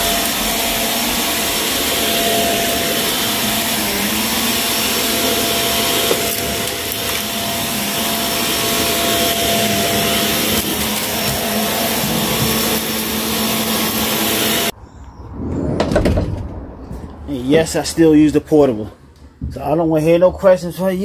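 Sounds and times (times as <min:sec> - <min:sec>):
vacuum cleaner humming on carpet: 0:00.0 - 0:14.7.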